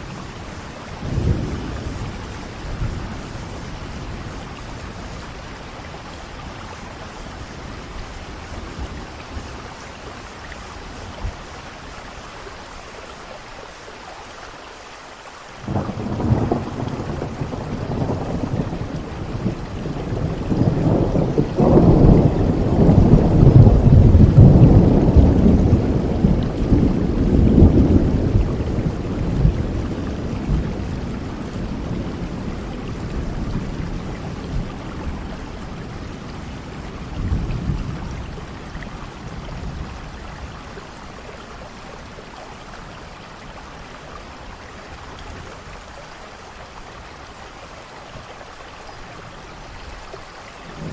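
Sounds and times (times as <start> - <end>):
thunder rumbling: 0.0 - 10.3, 15.6 - 42.2, 50.7 - 50.9
steady rain: 0.0 - 50.9.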